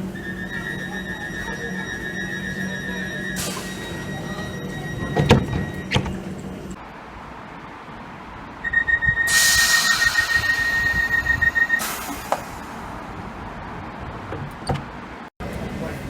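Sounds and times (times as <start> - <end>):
steady warning tone: 0.0 - 6.8, 8.6 - 12.9
train doors shutting: 0.0 - 6.8, 8.7 - 13.1
rapid warning beeps: 0.2 - 6.0, 8.6 - 12.6
loud air hiss: 3.4 - 4.0, 9.3 - 13.0.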